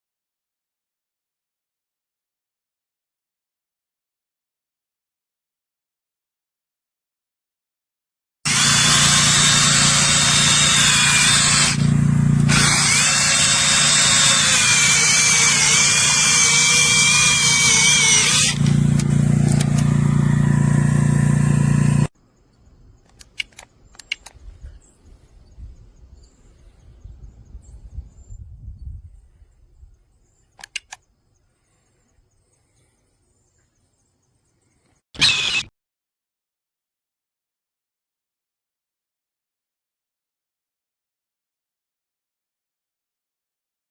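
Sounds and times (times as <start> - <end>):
electric chainsaw whining: 8.5 - 22.1, 35.2 - 35.7
faint clicks: 23.0 - 24.4, 30.6 - 31.1.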